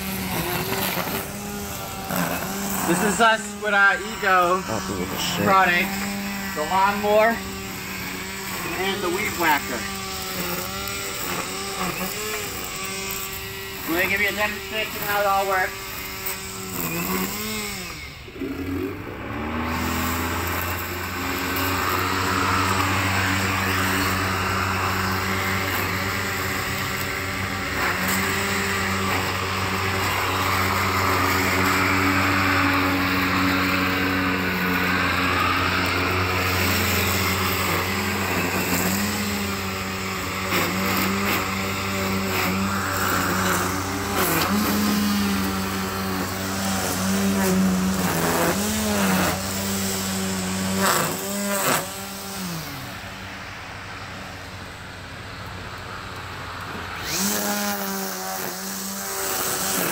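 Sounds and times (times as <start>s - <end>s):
electric motor humming: 0.0s - 54.5s, 56.2s - 59.9s.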